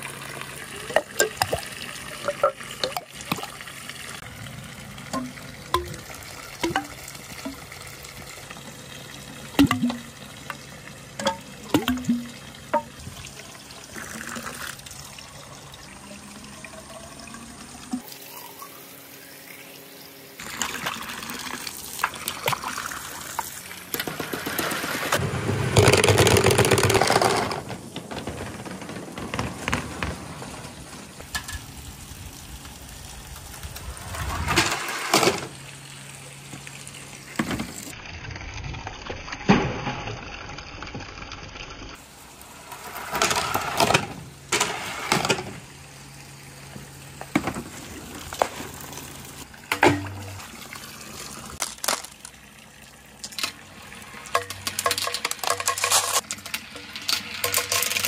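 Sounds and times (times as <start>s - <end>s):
marbles rolling and clacking: 23.3s - 31.7s, 54.3s - 58.0s.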